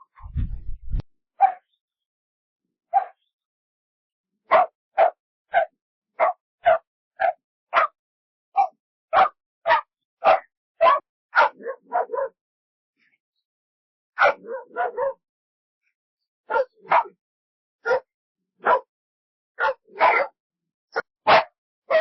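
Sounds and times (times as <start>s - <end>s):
dog barking: 1.4s - 1.7s, 2.9s - 3.3s, 4.5s - 12.4s, 14.2s - 15.3s, 16.4s - 17.2s, 17.8s - 18.9s, 19.6s - 22.0s.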